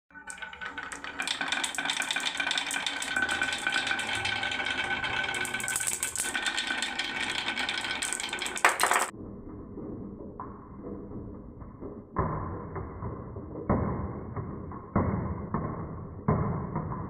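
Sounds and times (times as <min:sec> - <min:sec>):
marbles clattering down wooden run: 0:00.1 - 0:09.1.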